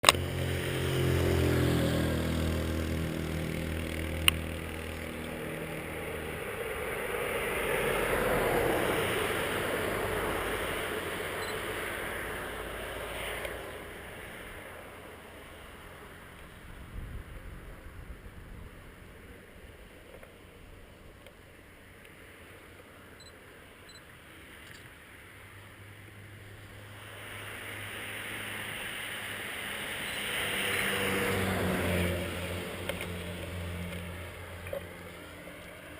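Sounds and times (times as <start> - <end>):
vehicle engine running: 0.0 - 21.7.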